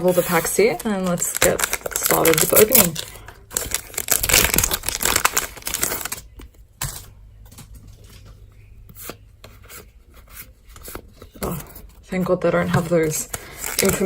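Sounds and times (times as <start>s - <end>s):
plastic wrappers crinkling: 0.0s - 8.4s, 13.0s - 14.0s.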